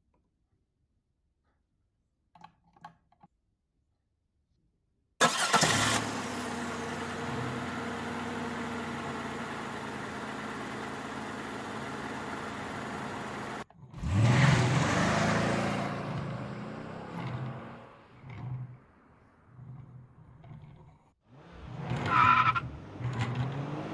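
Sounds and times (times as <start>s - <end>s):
car engine running: 5.2s - 18.3s
engine revving: 5.2s - 18.7s, 21.3s - 23.9s.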